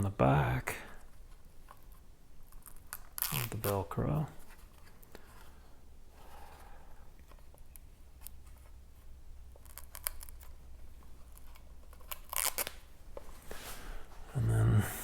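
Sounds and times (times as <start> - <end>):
liners peeled off adhesive strips: 1.1 - 4.9, 9.5 - 13.0.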